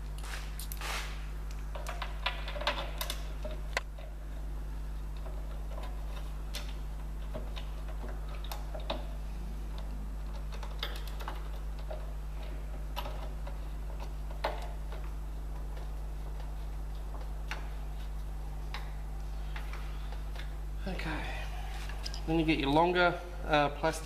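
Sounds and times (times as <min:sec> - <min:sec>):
steady low hum: 0:00.0 - 0:24.0
metal fasteners clicking: 0:01.7 - 0:04.1, 0:05.0 - 0:20.6.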